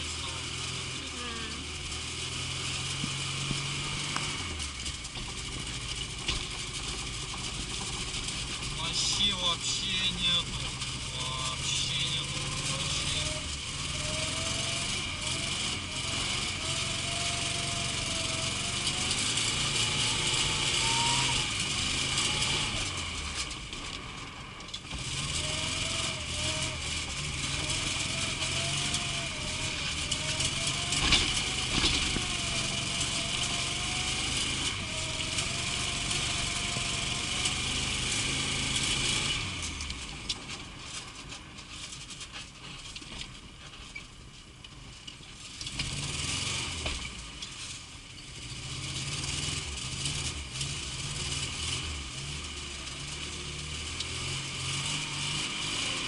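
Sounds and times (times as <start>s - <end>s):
car engine revving: 0.0s - 41.3s, 45.6s - 56.0s.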